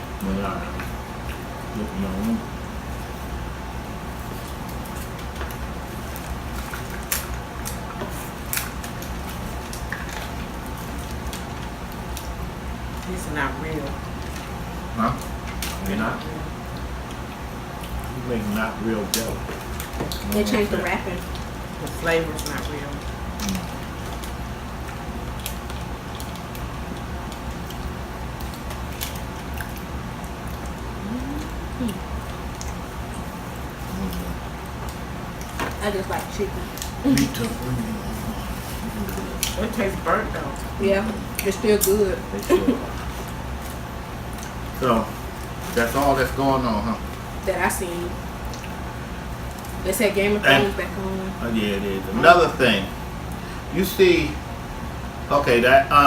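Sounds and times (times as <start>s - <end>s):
steady low hum: 0.0s - 56.0s
wet squishy chewing: 16.6s - 20.6s, 21.2s - 46.3s, 48.4s - 49.8s.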